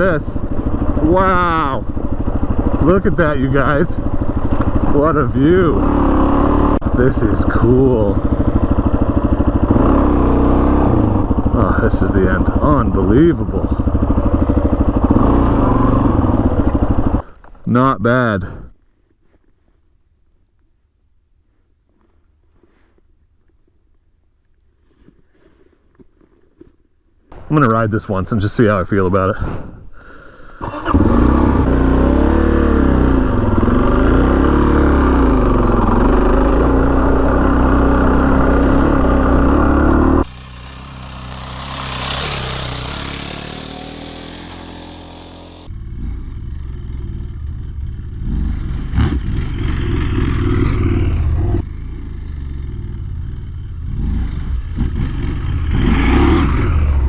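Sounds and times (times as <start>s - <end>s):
motorcycle engine revving: 0.0s - 17.3s, 30.6s - 57.0s.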